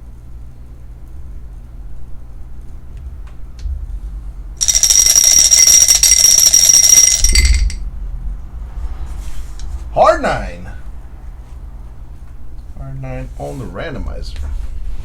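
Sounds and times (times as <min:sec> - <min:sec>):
high-pitched alarm-like ringing: 0:04.6 - 0:08.0.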